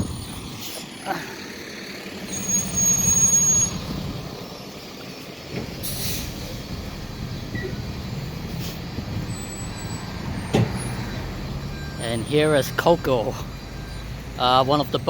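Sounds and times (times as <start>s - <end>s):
heavy vehicle brakes squealing: 0.0s - 4.2s, 5.5s - 15.0s
engine running: 0.0s - 15.0s
short air hiss: 5.8s - 6.6s.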